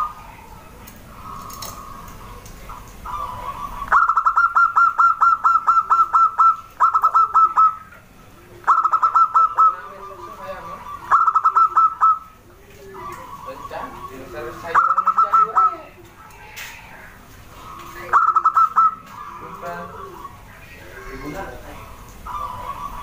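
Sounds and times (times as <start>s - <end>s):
dove cooing: 0.0s - 23.0s.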